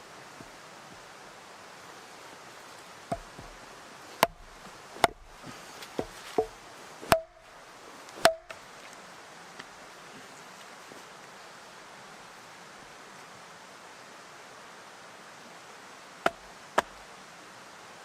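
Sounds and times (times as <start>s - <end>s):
tool striking wood: 3.1s - 3.6s, 4.2s - 7.5s, 8.2s - 8.6s, 16.2s - 17.0s.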